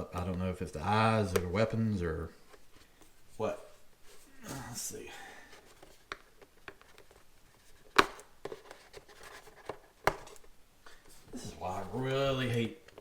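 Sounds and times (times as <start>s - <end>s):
cardboard packaging clicks and rustles: 5.4s - 13.0s.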